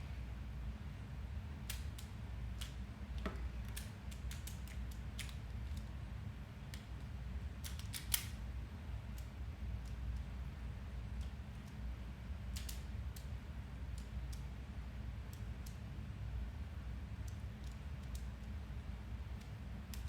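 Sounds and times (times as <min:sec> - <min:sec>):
plastic puzzle cube layers clicking: 0:07.6 - 0:08.3, 0:12.5 - 0:13.3.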